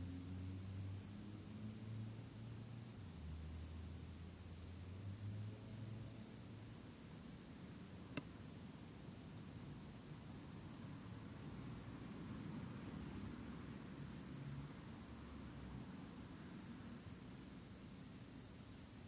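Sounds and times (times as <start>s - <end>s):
insect chirping: 0.1s - 0.8s, 1.4s - 2.0s, 3.2s - 3.8s, 4.7s - 6.8s, 8.0s - 13.2s, 14.0s - 18.7s.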